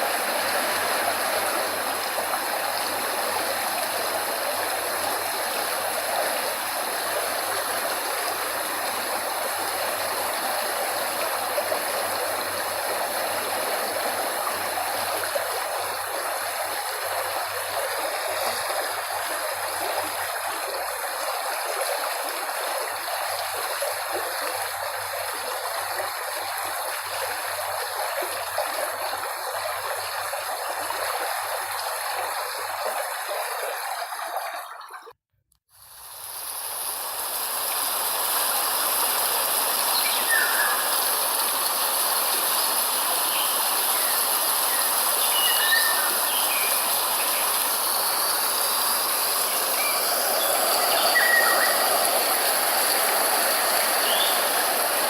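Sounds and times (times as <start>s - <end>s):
flowing water rushing: 0.0s - 35.2s, 35.8s - 55.0s
bright steady hiss: 35.7s - 55.0s
faint bird chirps: 49.6s - 52.0s.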